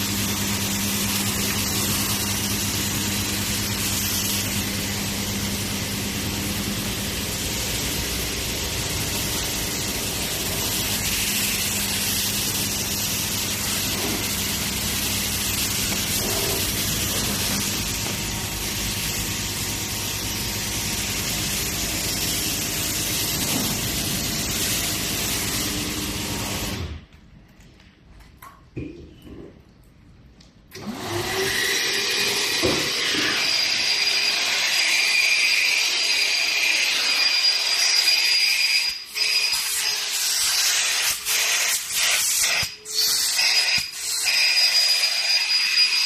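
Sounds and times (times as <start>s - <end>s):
high-pressure water spray hissing: 0.0s - 26.8s, 37.1s - 46.0s
pump motor hum: 0.0s - 27.0s.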